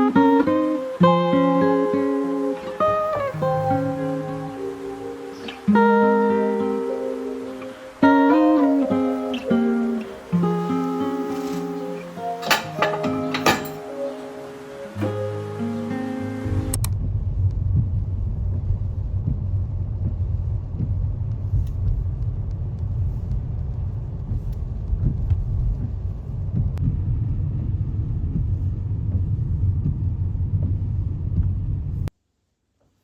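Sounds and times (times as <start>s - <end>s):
loud low rumble: 16.8s - 32.1s.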